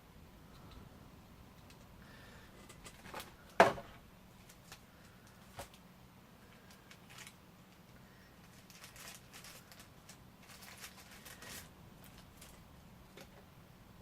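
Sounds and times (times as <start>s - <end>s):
low steady hum: 0.0s - 14.0s
plastic packaging crinkling: 6.5s - 13.4s.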